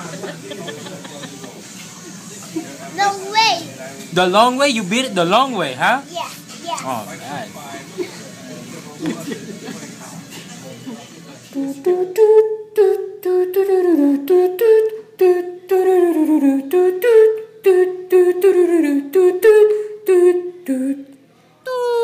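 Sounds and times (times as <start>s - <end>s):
person humming a melody: 11.6s - 22.0s.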